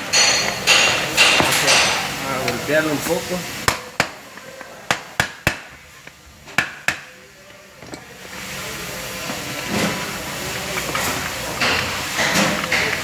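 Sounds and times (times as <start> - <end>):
hammer tapping metal punch: 0.1 - 2.2.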